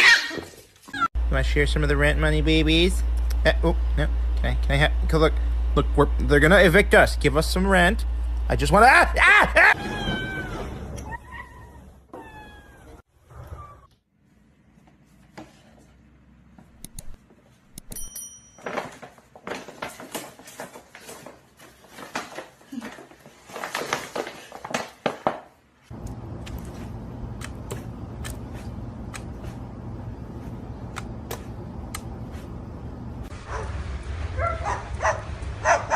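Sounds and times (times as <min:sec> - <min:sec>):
cat meowing: 0:09.8 - 0:13.0
sharp clicks and knocks: 0:16.8 - 0:18.0
steady low hum: 0:25.9 - 0:34.2.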